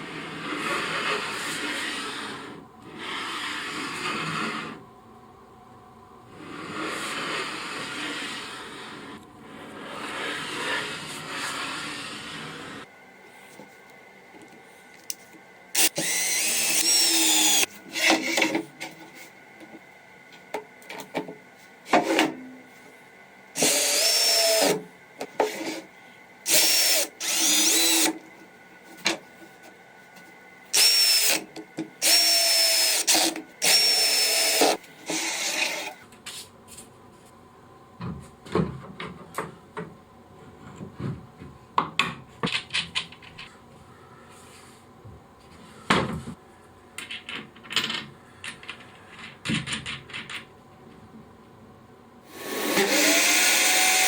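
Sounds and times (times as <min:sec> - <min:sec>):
power drill drilling into plywood: 0:15.8 - 0:17.7, 0:23.6 - 0:24.8, 0:26.5 - 0:28.2, 0:30.8 - 0:31.4, 0:32.0 - 0:36.0, 0:52.3 - 0:54.0
scattered clicks and knocks: 0:47.0 - 0:51.0.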